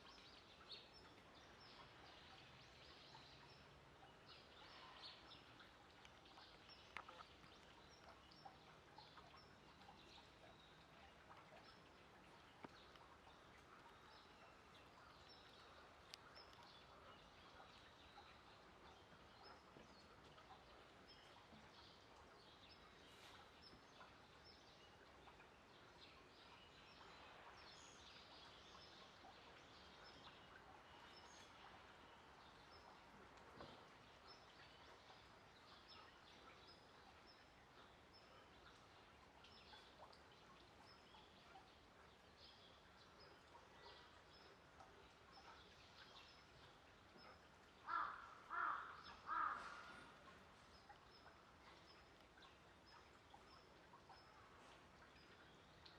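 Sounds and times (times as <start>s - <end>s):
small birds chirping: 0.0s - 55.9s.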